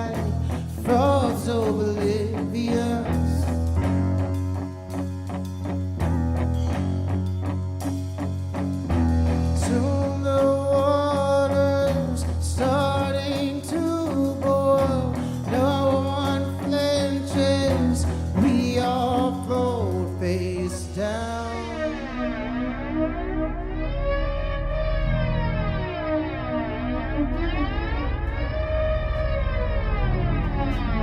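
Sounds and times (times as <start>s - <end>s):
live band music: 0.0s - 31.0s
gliding melodic lead line: 18.3s - 31.0s.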